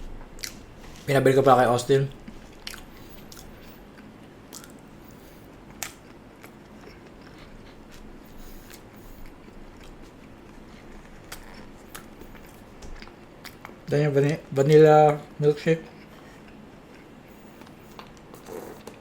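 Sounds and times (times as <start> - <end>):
person chewing food: 0.3 - 1.1, 2.1 - 14.4, 15.8 - 19.0.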